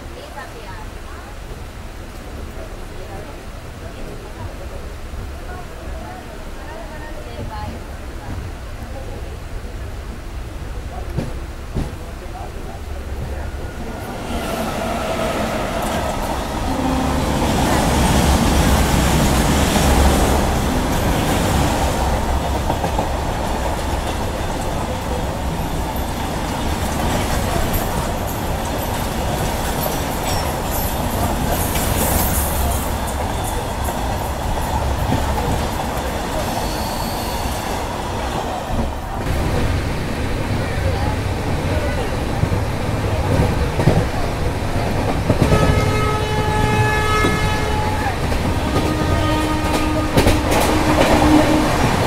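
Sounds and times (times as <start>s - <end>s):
train wheels rumbling and rattling: 1.7s - 52.0s.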